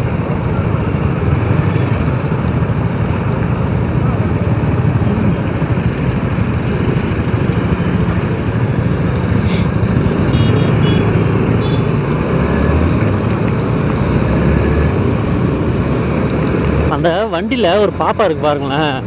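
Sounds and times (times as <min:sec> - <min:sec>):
motorcycle engine running: 0:00.0 - 0:14.0
brief high beeps: 0:10.3 - 0:11.9.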